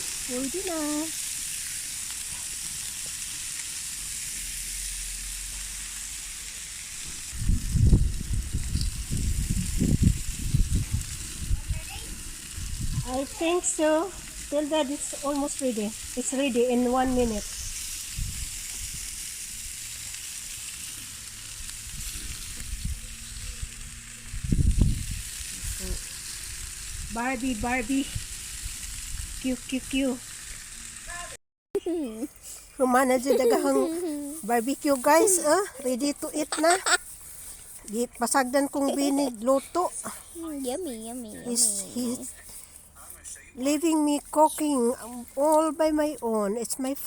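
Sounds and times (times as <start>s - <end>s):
meat sizzling on a grill: 0.0s - 47.0s.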